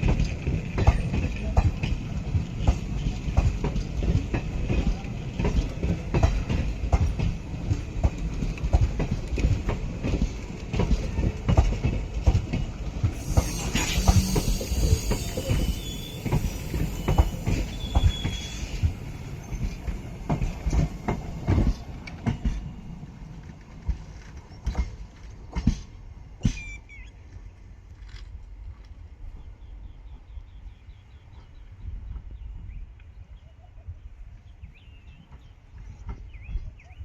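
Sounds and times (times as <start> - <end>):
train wheels clicking over rail joints: 0.0 - 26.7
train rumble: 0.0 - 33.0
hiss: 13.0 - 20.9
high squeals: 13.2 - 20.0.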